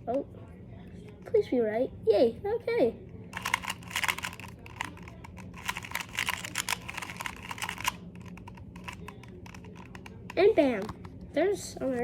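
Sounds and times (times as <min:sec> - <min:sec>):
plastic puzzle cube clicking: 0:03.4 - 0:11.0.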